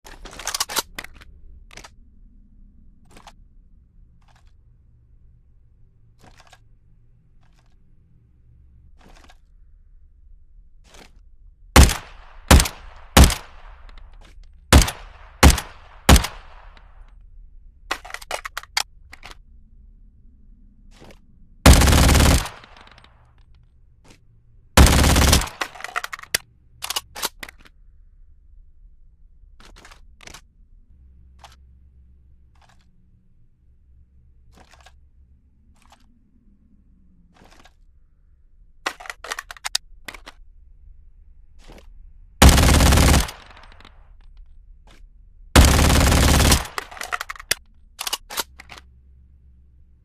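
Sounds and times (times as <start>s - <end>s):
low steady hum: 0.0s - 50.0s
submachine gun single shots: 11.8s - 13.9s, 14.7s - 16.8s, 21.7s - 23.0s, 24.8s - 26.2s, 42.4s - 43.8s, 45.6s - 47.4s.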